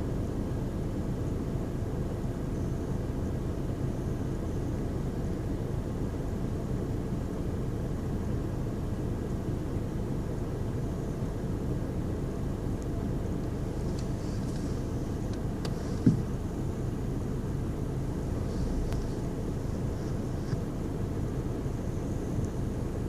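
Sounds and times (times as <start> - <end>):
diesel engine idling: 0.0 - 23.0
short thump: 15.7 - 16.4.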